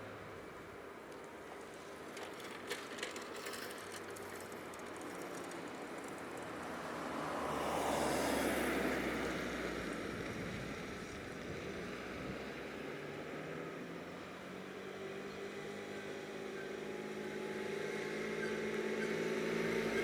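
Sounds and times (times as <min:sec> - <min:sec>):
vehicle passing by: 0:05.2 - 0:11.1.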